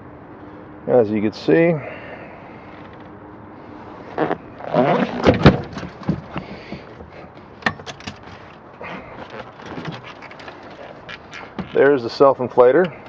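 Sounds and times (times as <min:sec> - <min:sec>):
boat hatch knocks and scraping: 0:04.1 - 0:12.0.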